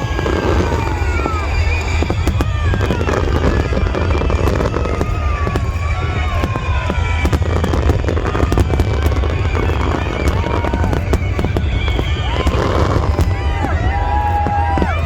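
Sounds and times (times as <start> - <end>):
fireworks cracks and pops: 0.0 - 15.0.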